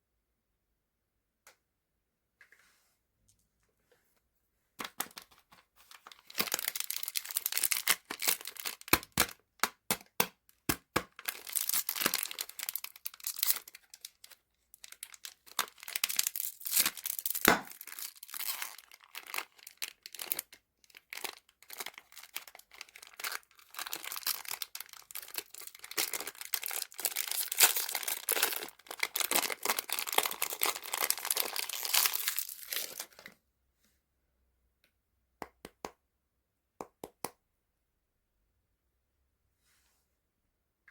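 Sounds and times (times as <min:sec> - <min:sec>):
candy wrappers crinkling: 0:04.8 - 0:33.4.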